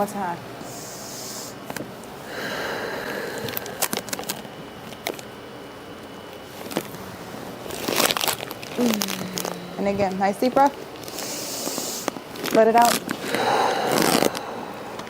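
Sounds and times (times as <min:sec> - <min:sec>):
person breathing deeply: 0:02.2 - 0:04.5, 0:09.0 - 0:10.0, 0:11.0 - 0:12.2, 0:13.2 - 0:15.0.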